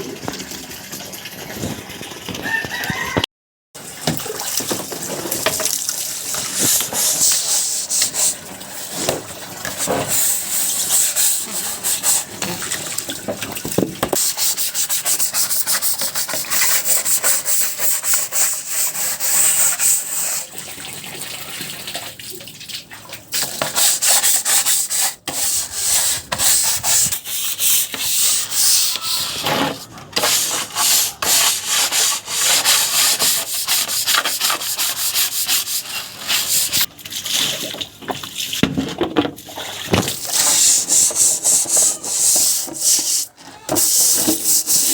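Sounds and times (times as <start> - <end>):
tray being scrubbed: 5.6 - 13.1, 14.2 - 20.5, 23.4 - 36.9, 40.0 - 44.9.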